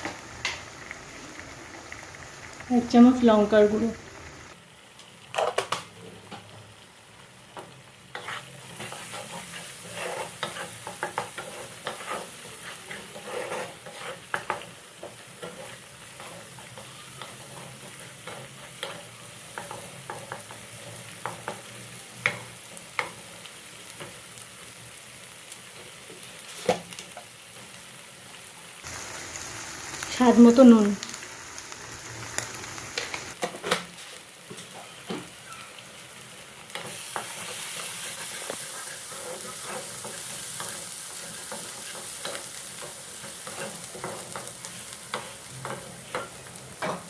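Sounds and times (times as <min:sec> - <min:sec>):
paste sizzling in oil: 0:00.0 - 0:05.4, 0:06.3 - 0:47.0
spatula scraping pan: 0:08.1 - 0:20.5, 0:36.7 - 0:47.0.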